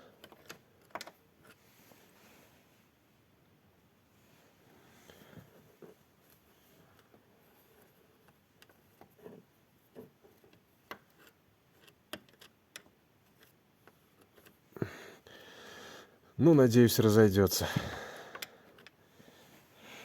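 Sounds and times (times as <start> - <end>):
soft rustle: 1.4 - 3.2, 4.1 - 11.4
hands clicking and tapping on hinges: 8.2 - 14.6.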